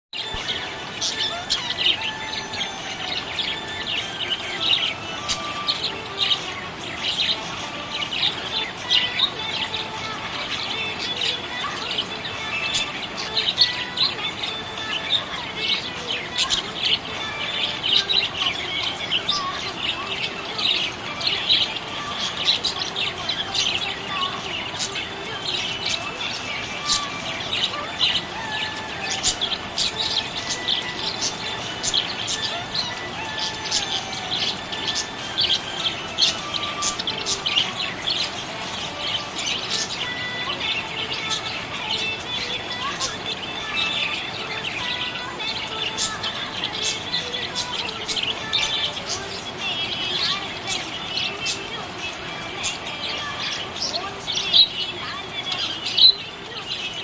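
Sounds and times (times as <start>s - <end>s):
budgerigar chirping and warbling: 0.2s - 57.0s.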